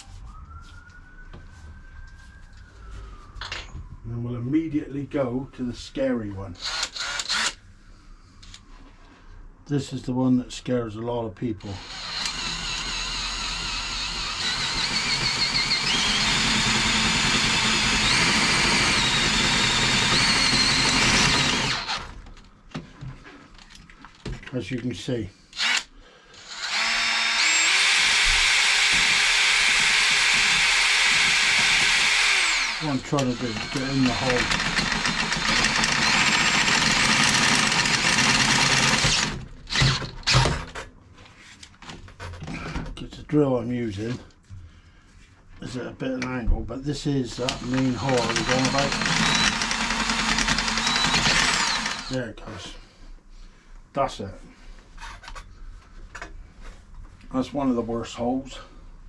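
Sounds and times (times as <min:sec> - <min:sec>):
electric drill motor: 0:06.6 - 0:07.6, 0:11.6 - 0:22.2, 0:25.6 - 0:40.8, 0:47.3 - 0:52.2
drill bit squealing on metal: 0:25.6 - 0:37.1, 0:47.3 - 0:52.2.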